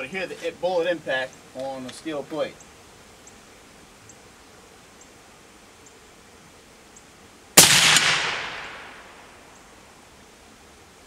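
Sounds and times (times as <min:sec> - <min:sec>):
suppressed rifle shot: 0:07.6 - 0:09.4.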